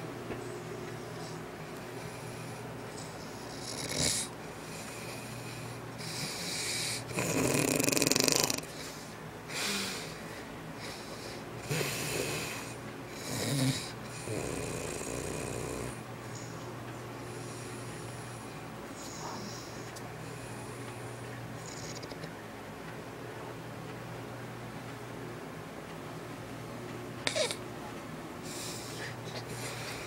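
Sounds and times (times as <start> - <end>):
person snoring: 2.1 - 8.7, 11.6 - 16.0, 27.3 - 27.6.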